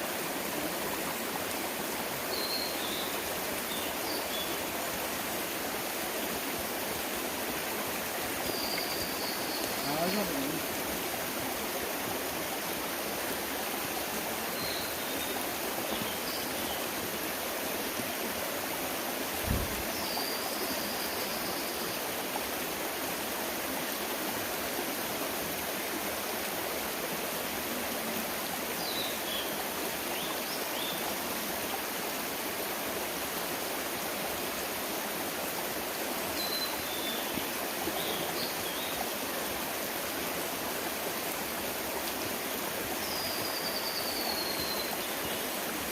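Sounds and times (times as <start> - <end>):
stream rushing over rocks: 0.0 - 45.9
low thump: 19.4 - 19.8.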